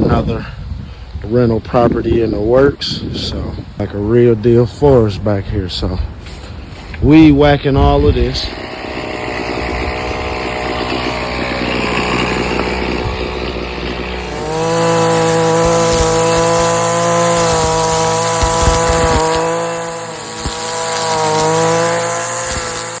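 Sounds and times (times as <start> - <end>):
string trimmer engine whine: 6.5 - 23.0
low rough machine noise: 8.3 - 23.0.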